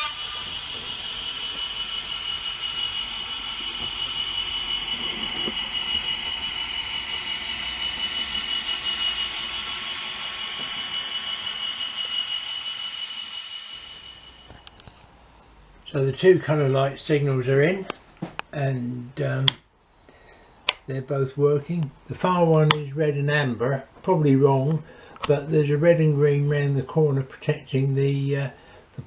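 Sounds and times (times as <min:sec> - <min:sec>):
model train high-pitched whine: 0:00.0 - 0:15.0.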